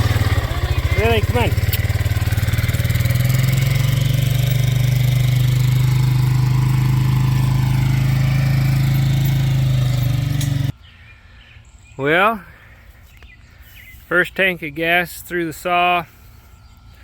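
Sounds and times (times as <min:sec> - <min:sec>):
chainsaw running steadily: 0:00.0 - 0:10.7.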